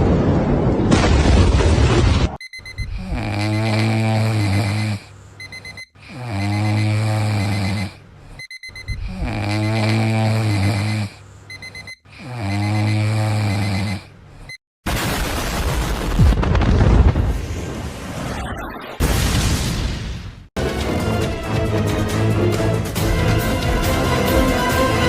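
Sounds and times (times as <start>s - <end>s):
person snoring: 2.9s - 5.2s, 6.0s - 8.4s, 9.0s - 11.2s, 12.1s - 14.5s
rapid faint beeping: 4.4s - 14.6s.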